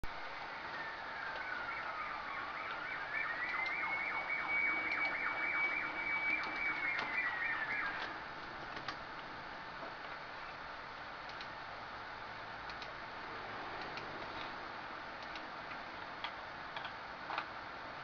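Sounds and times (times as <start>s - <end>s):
siren wailing: 0.3s - 9.1s
siren yelping: 0.4s - 8.6s.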